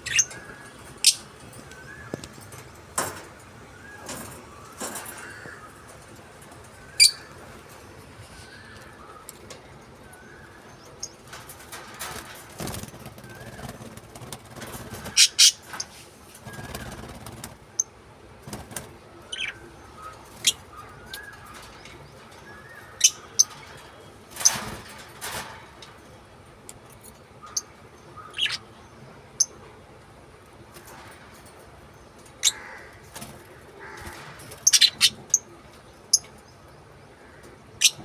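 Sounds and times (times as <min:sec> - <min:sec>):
lovebirds chirping and squeaking: 0:00.0 - 0:17.9, 0:18.5 - 0:26.2, 0:26.9 - 0:28.8, 0:30.8 - 0:36.6, 0:37.8 - 0:38.0
wings flapping and rustling: 0:11.0 - 0:19.1, 0:20.2 - 0:26.1, 0:33.0 - 0:35.2.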